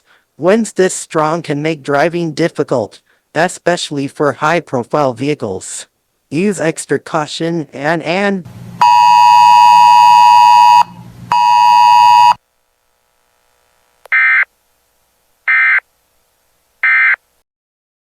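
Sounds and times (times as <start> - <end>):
steady electronic alert beep: 8.8 - 12.4.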